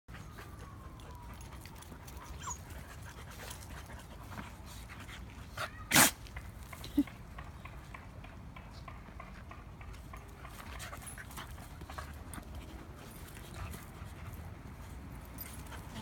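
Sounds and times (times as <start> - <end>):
puppy panting and sniffing: 0.1 - 7.9, 8.9 - 16.0
puppy sneezing: 5.6 - 6.2.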